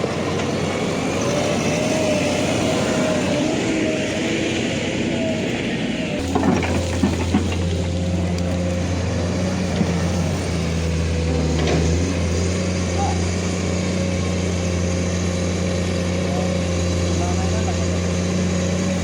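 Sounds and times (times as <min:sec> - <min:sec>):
diesel engine humming: 0:00.0 - 0:19.0.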